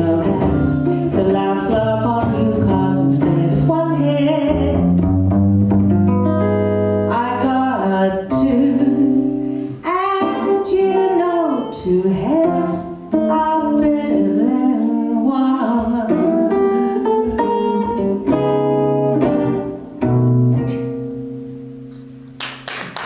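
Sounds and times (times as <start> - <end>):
jazz singer singing: 0.0 - 5.5, 6.8 - 19.6
guitar chords: 0.0 - 23.0.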